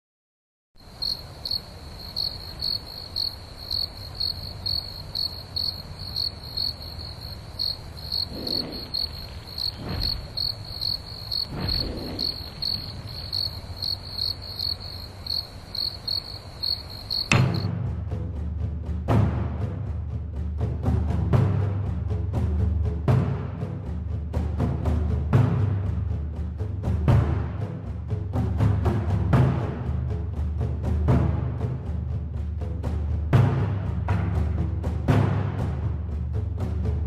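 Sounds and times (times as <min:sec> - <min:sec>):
crickets chirping: 0:00.8 - 0:17.7
deep drum hit: 0:17.3 - 0:17.8.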